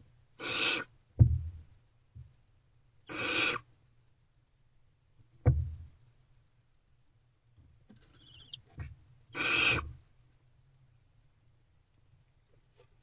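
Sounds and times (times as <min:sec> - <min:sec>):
owl hissing screech: 0:00.4 - 0:00.9, 0:03.1 - 0:03.7, 0:08.0 - 0:08.6, 0:09.3 - 0:10.0
owl rasping call: 0:00.4 - 0:01.0, 0:03.1 - 0:03.7, 0:08.0 - 0:08.7, 0:09.3 - 0:10.0
thump: 0:01.2 - 0:01.6, 0:05.4 - 0:05.9.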